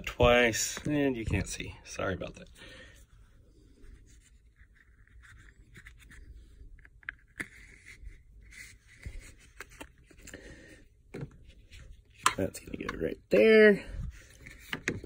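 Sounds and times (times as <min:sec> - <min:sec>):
faint scraping of cable: 0:02.3 - 0:13.0.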